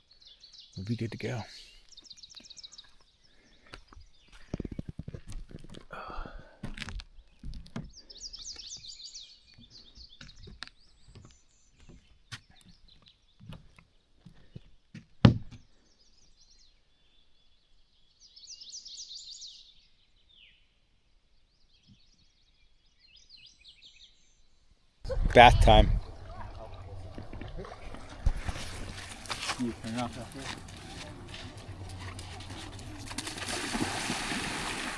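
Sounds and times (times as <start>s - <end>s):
songbirds trilling: 25.1s - 34.9s.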